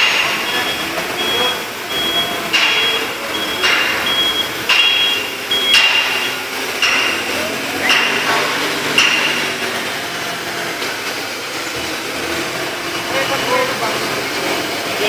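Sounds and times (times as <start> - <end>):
hammer striking metal: 0.0 - 11.1
high electronic beep: 0.4 - 6.5.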